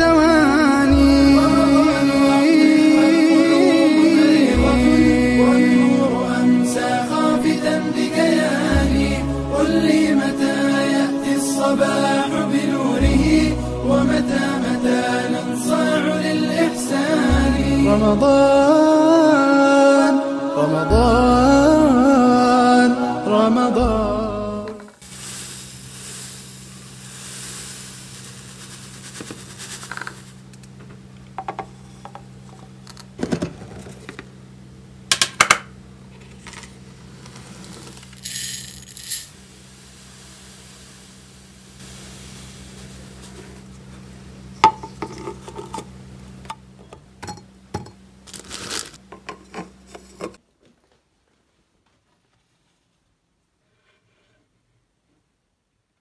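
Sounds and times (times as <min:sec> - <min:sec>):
steady low hum: 0:00.0 - 0:50.4.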